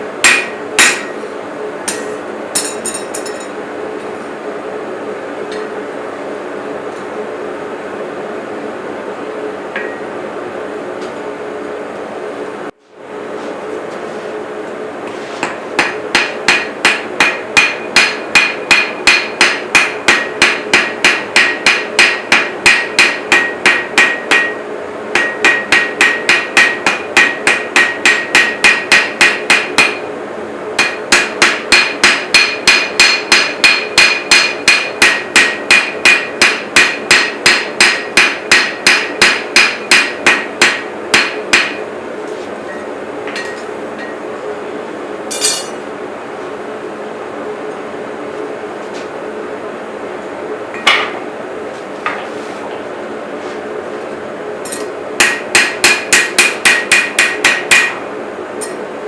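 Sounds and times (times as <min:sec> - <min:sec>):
steady hum: 0:00.0 - 0:59.0
hammer striking steel on anvil: 0:00.2 - 0:01.2, 0:01.9 - 0:03.6, 0:09.8 - 0:10.1, 0:15.4 - 0:30.1, 0:30.8 - 0:41.9, 0:42.7 - 0:44.2, 0:45.3 - 0:45.8, 0:50.8 - 0:51.3, 0:54.7 - 0:58.8.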